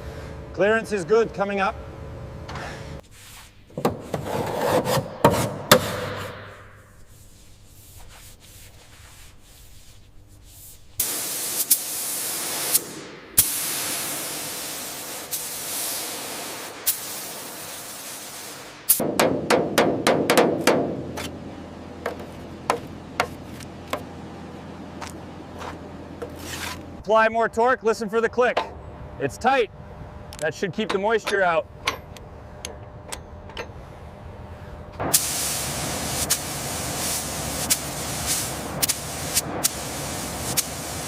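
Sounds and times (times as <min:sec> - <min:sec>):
steady hiss: 0:06.9 - 0:19.0, 0:35.1 - 0:41.0
hand tool scraping and tapping: 0:30.8 - 0:32.0.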